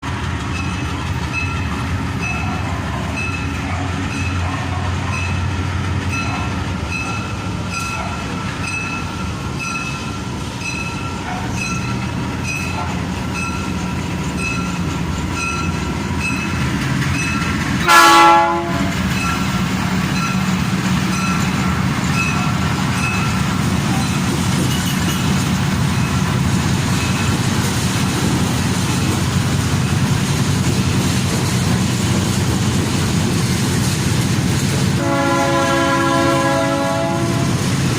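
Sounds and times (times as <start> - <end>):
diesel locomotive engine running: 0.0 - 37.9
locomotive horn blast: 17.8 - 19.1, 35.0 - 37.6.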